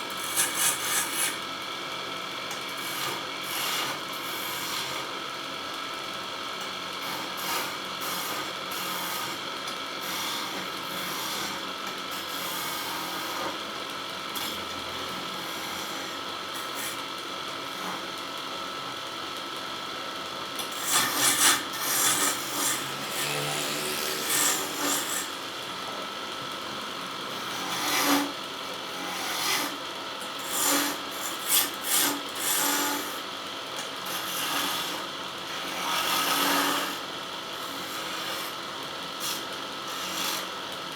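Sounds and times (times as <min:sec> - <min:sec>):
turning tool cutting wood: 0:00.2 - 0:01.4, 0:20.6 - 0:26.0, 0:30.4 - 0:33.2, 0:34.1 - 0:37.0
wood lathe humming: 0:20.8 - 0:28.8, 0:34.1 - 0:37.0.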